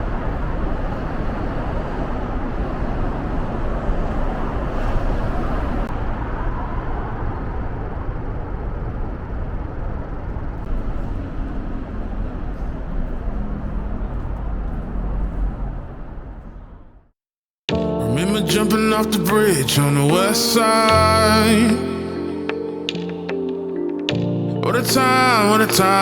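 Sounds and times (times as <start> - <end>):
road traffic rumble: 0.0 - 17.0.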